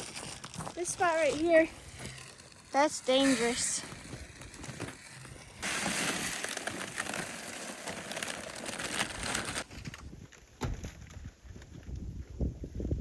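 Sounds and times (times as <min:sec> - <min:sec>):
footsteps on frozen ground: 0:00.0 - 0:08.5
thud: 0:10.6 - 0:11.0.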